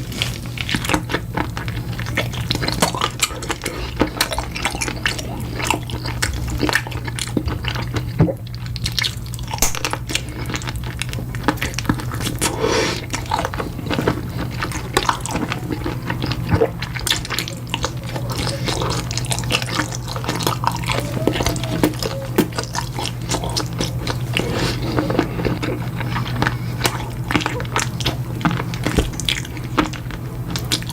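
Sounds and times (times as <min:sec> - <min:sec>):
steady low hum: 0:00.0 - 0:30.9
wet chewing and slurping: 0:00.0 - 0:30.9.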